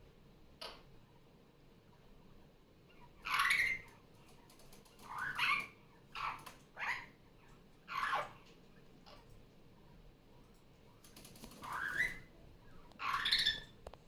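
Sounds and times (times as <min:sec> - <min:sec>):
parrot calling: 0:02.9 - 0:03.9, 0:05.0 - 0:07.2, 0:07.8 - 0:09.2, 0:11.6 - 0:13.8.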